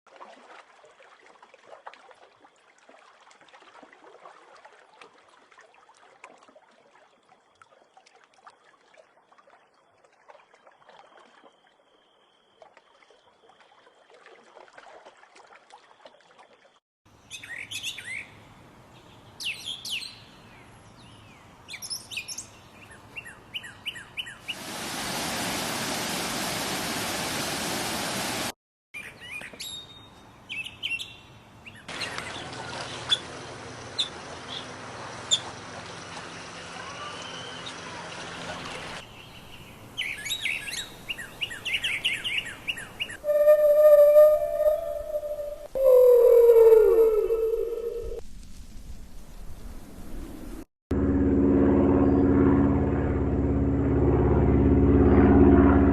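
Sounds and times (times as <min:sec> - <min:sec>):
birds chirping: 0:36.6 - 0:48.2.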